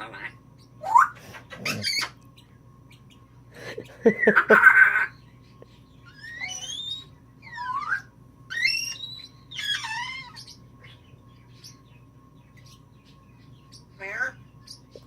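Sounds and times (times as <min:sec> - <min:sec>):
parrot whistled calls: 0:06.1 - 0:10.6.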